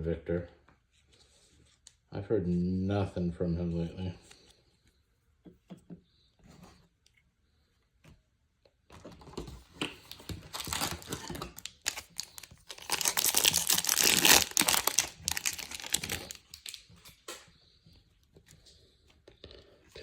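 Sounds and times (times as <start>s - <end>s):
cards being handled: 9.7s - 17.4s
wrapper tearing and crinkling: 10.1s - 16.8s.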